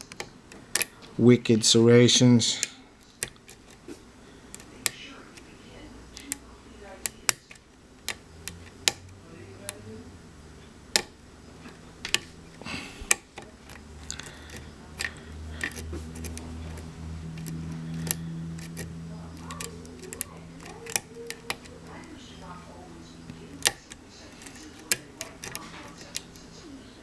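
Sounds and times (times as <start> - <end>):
lock pick clicks: 0.0 - 1.0, 2.6 - 3.8, 6.1 - 6.4, 7.0 - 9.1, 10.9 - 12.3, 13.0 - 22.5, 23.3 - 26.4
faint low hum: 0.0 - 27.0.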